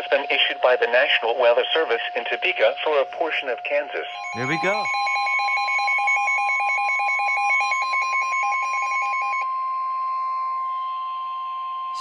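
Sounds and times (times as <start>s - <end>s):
fast warbling electronic beeps: 4.2s - 9.4s
steady single-pitch alert tone: 4.2s - 12.0s.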